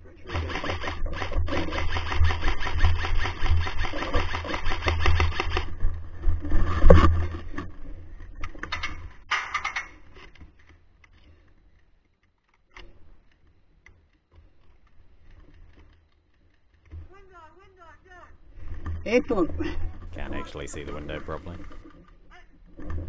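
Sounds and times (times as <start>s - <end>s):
airsoft guns firing: 0.3s - 5.7s.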